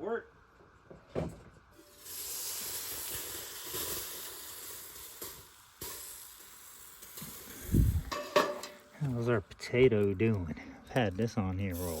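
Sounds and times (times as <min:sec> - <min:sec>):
potato sizzling: 0:01.8 - 0:08.4.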